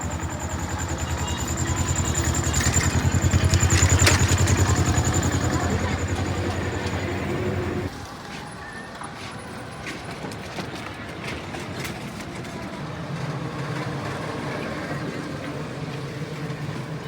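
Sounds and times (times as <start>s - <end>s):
vehicle engine humming: 0.0s - 7.9s
road traffic noise: 0.0s - 8.4s.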